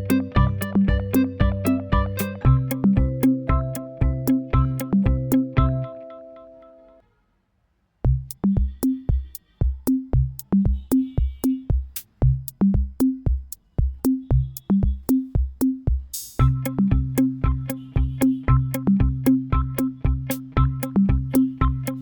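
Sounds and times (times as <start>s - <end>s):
electronic drum-machine beat: 0.0s - 5.9s, 8.0s - 22.0s
music melody: 0.0s - 7.0s, 16.4s - 22.0s.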